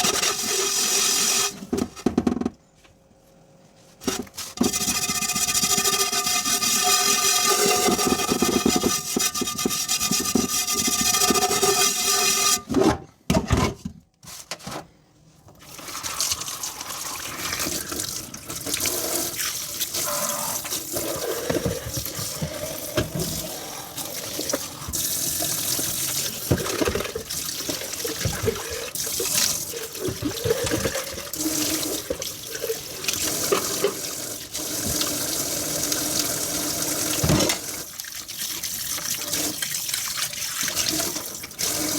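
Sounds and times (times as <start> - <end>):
tap water running into sink: 15.6 - 41.9.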